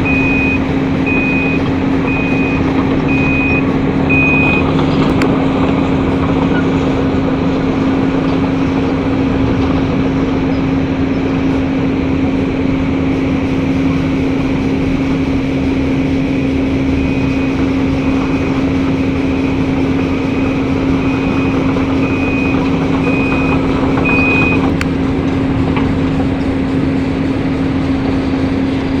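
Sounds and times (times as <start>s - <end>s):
alarm beeping: 0.0s - 5.0s, 16.9s - 24.7s
excavator diesel engine humming: 0.0s - 29.0s.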